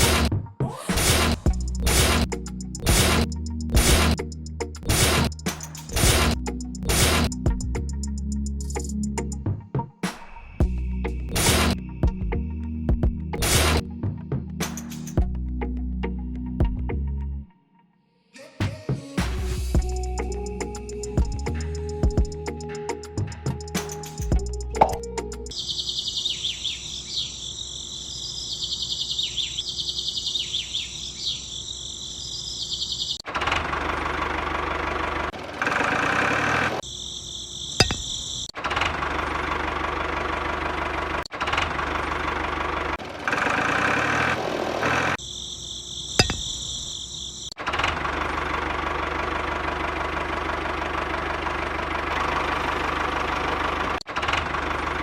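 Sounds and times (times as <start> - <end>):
motor tool buzzing: 0.9 - 4.2, 4.9 - 7.4.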